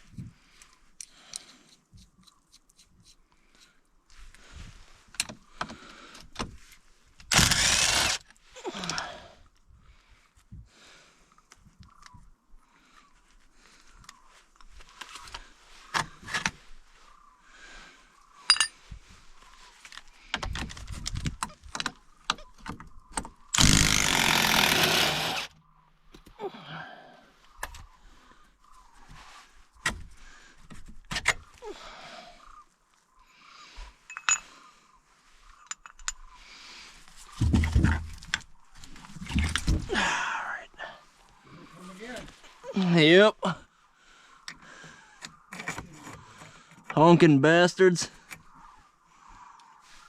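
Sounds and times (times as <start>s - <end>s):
tools and metal parts clinking: 18.4s - 18.8s, 34.1s - 34.6s, 35.6s - 36.2s.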